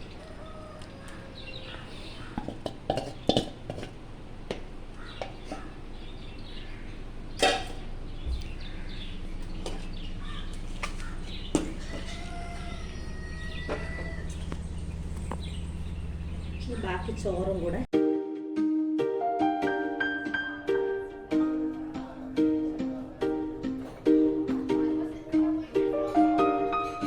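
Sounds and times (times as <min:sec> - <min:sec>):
chickens clucking: 0:00.0 - 0:17.9
spoon scraping in cooking pot: 0:02.0 - 0:04.0, 0:05.2 - 0:05.9.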